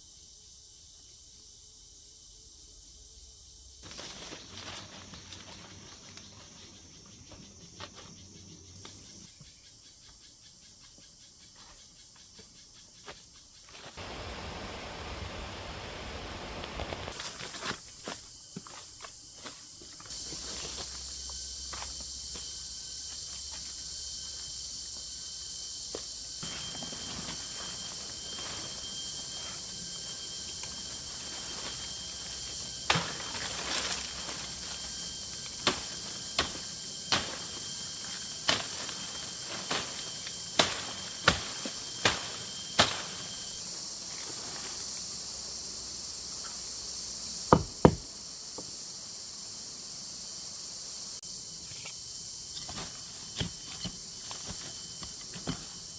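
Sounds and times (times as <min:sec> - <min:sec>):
insect chorus: 0:00.0 - 0:55.9
sharp knocks: 0:47.5 - 0:48.1.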